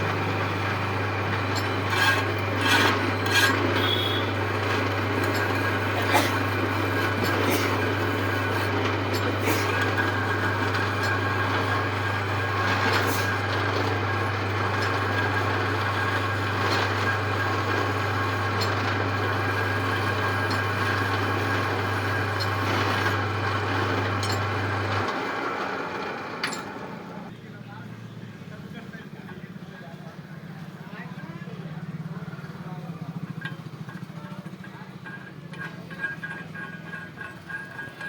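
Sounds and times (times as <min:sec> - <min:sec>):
low motor hum: 0:00.0 - 0:27.3
metal lathe running: 0:00.0 - 0:27.3, 0:31.1 - 0:38.0.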